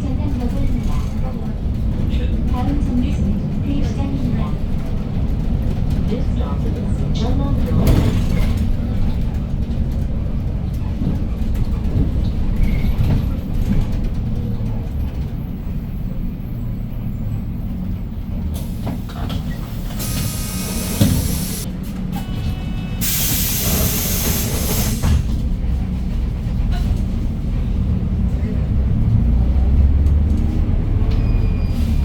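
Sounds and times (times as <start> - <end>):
bus engine and road rumble: 0.0 - 32.0
air hiss bursts: 19.9 - 21.6, 23.0 - 25.2.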